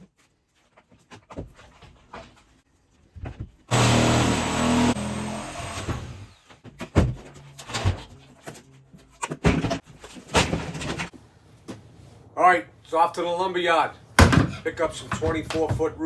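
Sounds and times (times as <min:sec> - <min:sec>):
reciprocating saw running: 0:03.7 - 0:06.4.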